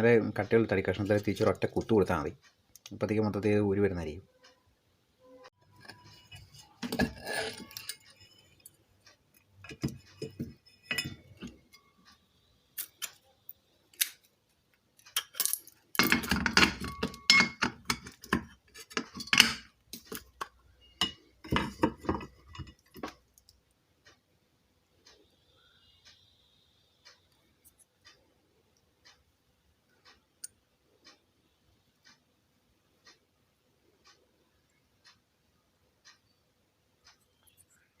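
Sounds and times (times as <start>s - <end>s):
metal parts knocking on wood: 15.2s - 23.2s.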